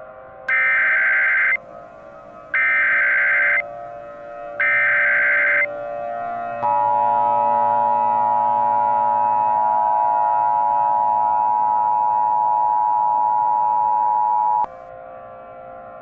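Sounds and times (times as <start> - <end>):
two-tone electronic alert tone: 0.5 - 1.6, 2.6 - 3.6, 4.6 - 5.7.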